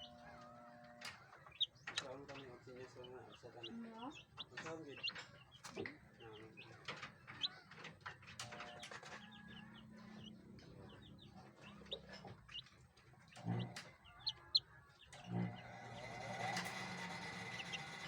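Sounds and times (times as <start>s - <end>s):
birds chirping softly: 0.0s - 18.0s.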